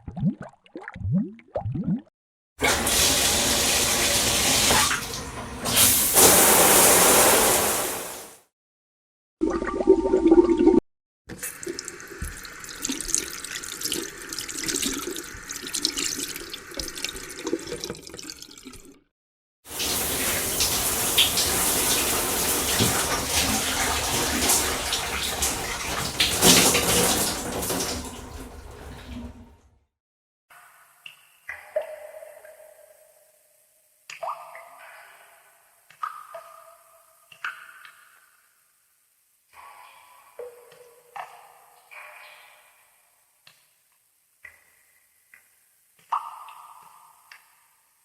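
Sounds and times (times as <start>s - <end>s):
uneven water noise: 0.0s - 8.4s, 11.4s - 19.0s, 19.7s - 29.6s
loud water burst: 2.6s - 8.4s, 19.7s - 29.4s
water running steadily: 2.6s - 8.4s, 11.6s - 18.9s, 19.7s - 29.5s.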